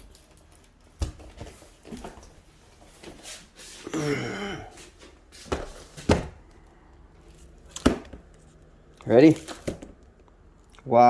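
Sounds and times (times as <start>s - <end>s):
person mumbling: 3.9s - 4.8s.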